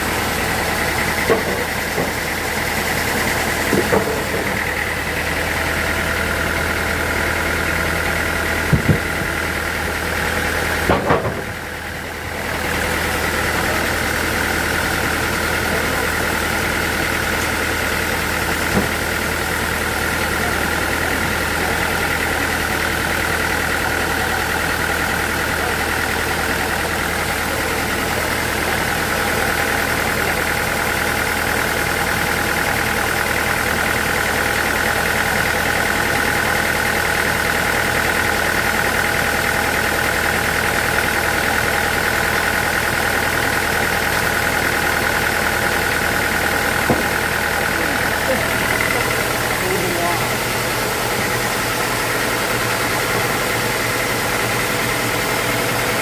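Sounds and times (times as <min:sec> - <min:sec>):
sawmill machinery hum and whine: 0:00.0 - 0:56.0
sharp knocks: 0:08.7 - 0:09.3, 0:46.8 - 0:47.4.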